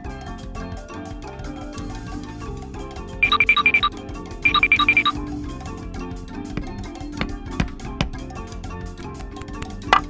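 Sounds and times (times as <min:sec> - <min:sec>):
sharp percussive taps: 0:06.4 - 0:08.3.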